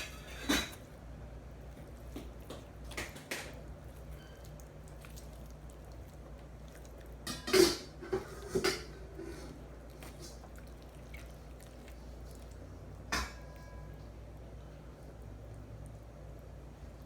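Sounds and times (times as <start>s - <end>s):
dishes and utensils clattering: 0.0s - 0.9s, 7.2s - 9.5s.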